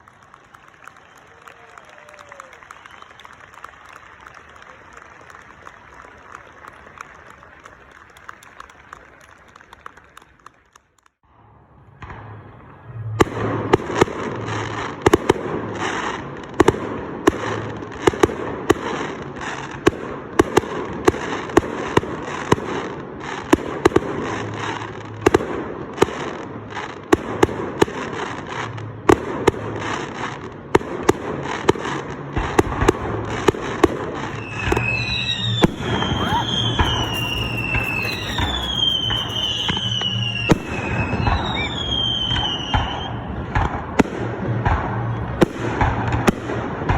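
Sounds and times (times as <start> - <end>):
fireworks crackling: 0.0 - 10.6, 13.2 - 46.6
faint applause: 0.0 - 11.2, 32.4 - 46.3
fireworks bangs: 11.8 - 46.9.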